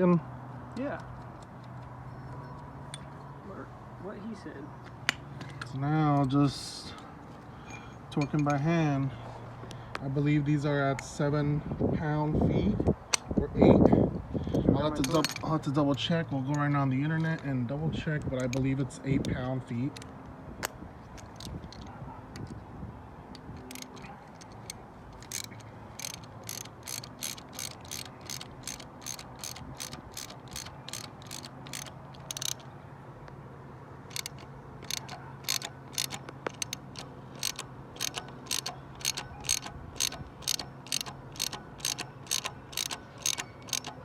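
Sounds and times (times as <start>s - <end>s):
hand ratchet clicking: 21.2s - 22.5s, 23.4s - 32.7s, 34.1s - 44.0s.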